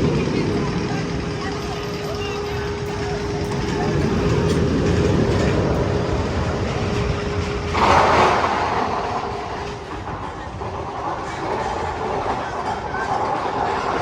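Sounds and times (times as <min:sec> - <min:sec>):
roller coaster train rumbling: 0:00.0 - 0:14.0.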